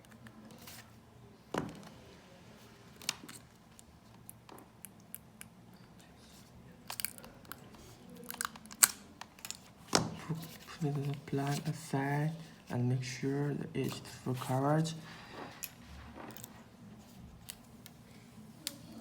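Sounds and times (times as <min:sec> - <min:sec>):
plastic clicks and crackles: 0:06.8 - 0:10.0.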